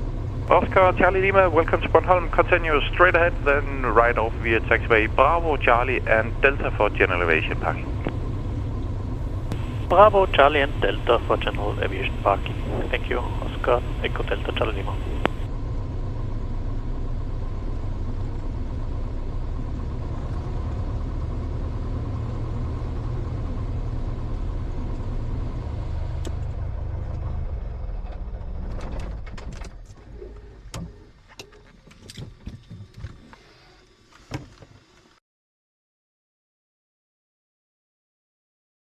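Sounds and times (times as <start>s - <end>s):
airplane piston engine running: 0.1s - 15.5s.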